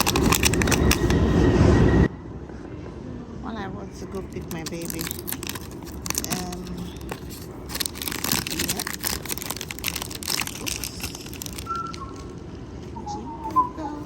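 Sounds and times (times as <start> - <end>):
packaging crinkling: 0.0 - 1.3, 4.2 - 13.7.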